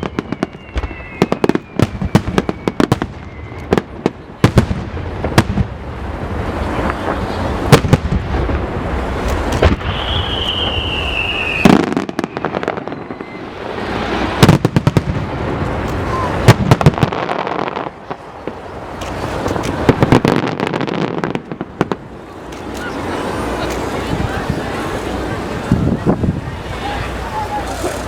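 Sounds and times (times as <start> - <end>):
firework whistle: 0.0 - 4.2, 9.1 - 15.0
fireworks bangs and crackling: 0.0 - 28.0.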